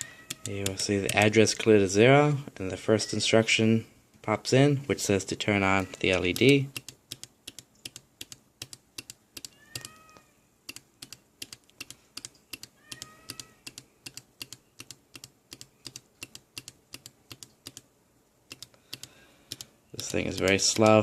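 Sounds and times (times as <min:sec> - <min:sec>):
faint high cry: 0:12.8 - 0:13.6.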